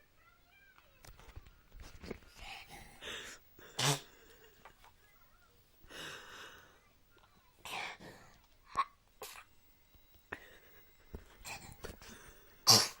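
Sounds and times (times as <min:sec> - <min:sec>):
person sneezing: 0:03.7 - 0:04.2, 0:12.6 - 0:13.0.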